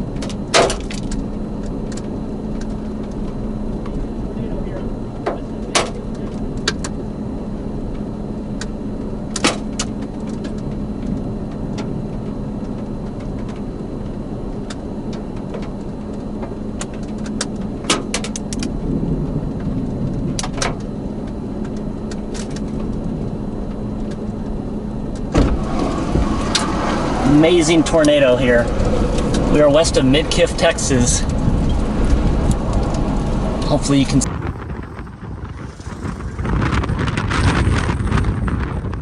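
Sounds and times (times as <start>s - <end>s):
wind rumble: 18.6s - 39.0s
vehicle idling: 24.3s - 38.0s.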